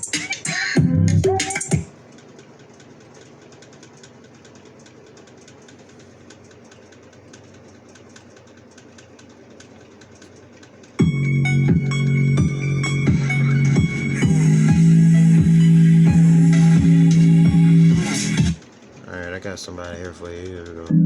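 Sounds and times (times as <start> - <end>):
music through small speakers: 0.0 - 2.0, 11.0 - 18.6
low hum and hiss: 0.0 - 21.0
faint rapid ticking: 1.5 - 18.0, 18.6 - 21.0.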